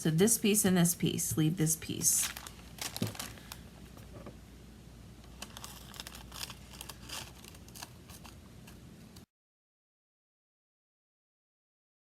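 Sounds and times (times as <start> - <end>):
faint hum: 0.0 - 9.3
paper crinkling and being cut: 5.3 - 8.8.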